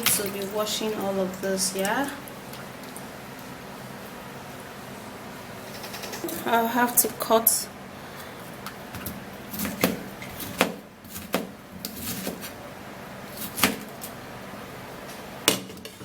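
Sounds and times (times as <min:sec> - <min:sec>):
knife cutting pineapple: 0:09.5 - 0:12.6, 0:13.3 - 0:13.9.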